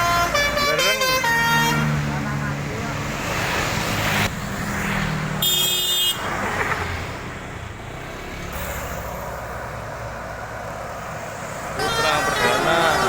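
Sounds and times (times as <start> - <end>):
bus horn toot: 0.0 - 1.9, 5.4 - 6.2, 11.8 - 13.0
bus engine humming: 0.0 - 4.6, 5.3 - 13.0
traffic noise: 0.0 - 13.0
vehicle rushing past: 1.5 - 5.4.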